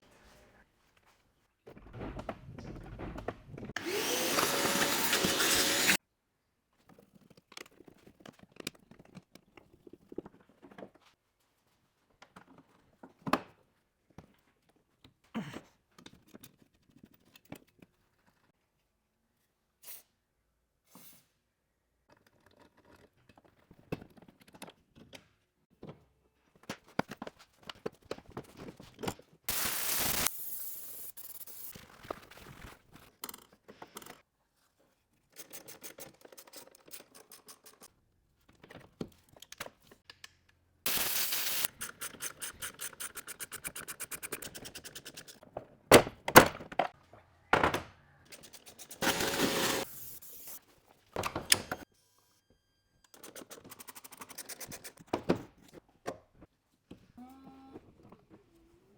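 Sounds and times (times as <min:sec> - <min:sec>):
hissing bursts: 0:29.5 - 0:31.7, 0:40.9 - 0:42.7.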